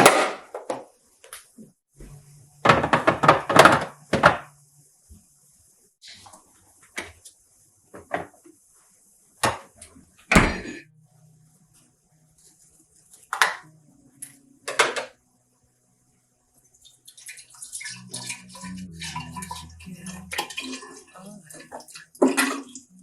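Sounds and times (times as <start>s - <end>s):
water running: 16.5s - 23.0s
kitchenware clattering: 20.3s - 22.8s.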